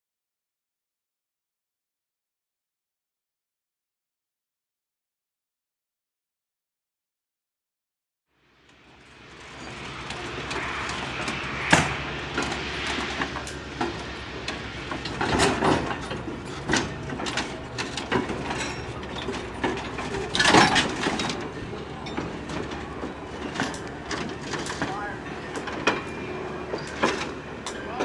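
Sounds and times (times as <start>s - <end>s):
train rumbling: 8.5s - 28.0s
metallic clanks and knocks: 9.5s - 27.8s.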